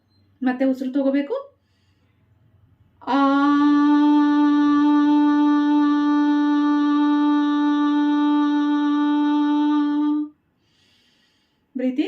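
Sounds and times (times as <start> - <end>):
woman holding a long aaa: 3.0 - 10.4.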